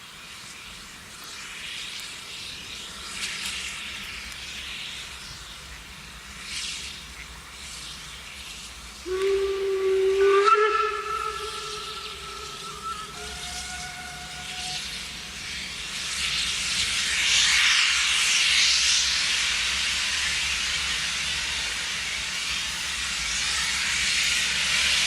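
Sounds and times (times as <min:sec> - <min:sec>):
steam locomotive hissing: 0:00.0 - 0:25.0
steam whistle blast: 0:09.0 - 0:15.4.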